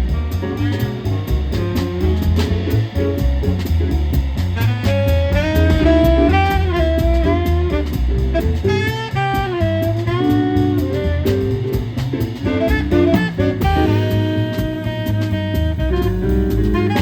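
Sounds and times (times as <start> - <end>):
keyboard: 0.0 - 14.9
bass line: 0.0 - 17.0
drum kit cymbal strokes: 0.0 - 17.0
saxophone melody: 4.6 - 17.0.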